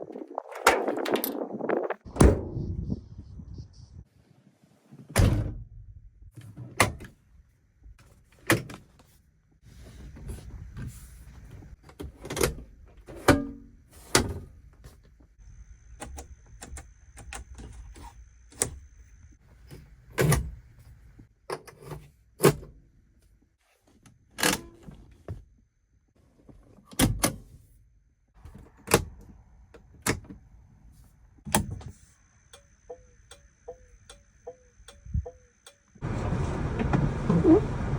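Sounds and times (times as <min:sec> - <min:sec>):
car doors thunking shut: 0:05.1 - 0:05.6.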